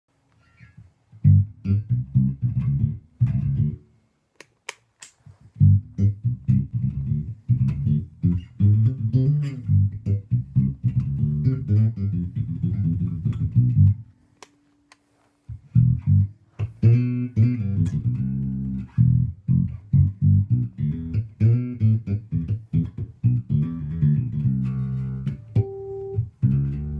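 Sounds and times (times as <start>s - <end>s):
electric bass guitar: 0.6s - 3.9s, 5.5s - 14.1s, 15.5s - 26.9s
sharp clicks: 4.4s - 5.2s.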